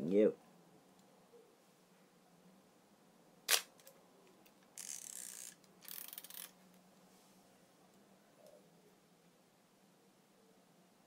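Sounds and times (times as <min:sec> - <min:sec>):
camera shutter click: 0:03.5 - 0:03.9
film advance lever ratcheting: 0:04.8 - 0:06.5.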